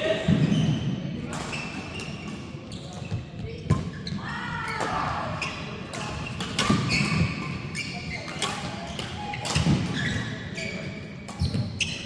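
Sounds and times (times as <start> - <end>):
shoes squeaking on court: 1.5 - 4.3, 5.4 - 12.0
rackets striking shuttlecock: 5.9 - 10.3.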